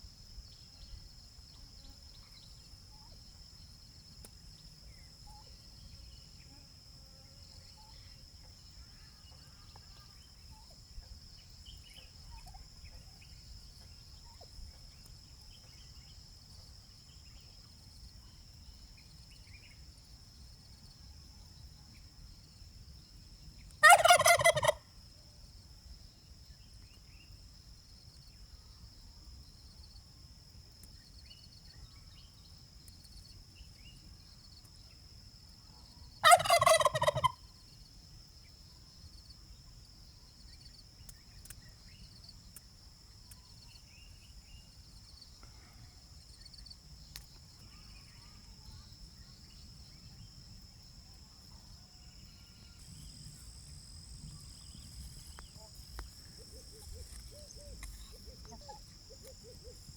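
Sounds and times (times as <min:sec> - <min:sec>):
turkey gobbling: 0:23.8 - 0:24.8, 0:36.2 - 0:37.4.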